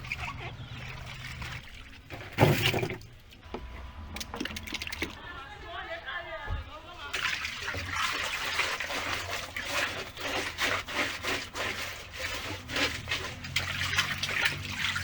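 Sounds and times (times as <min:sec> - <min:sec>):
water splashing and trickling: 0:00.0 - 0:15.0.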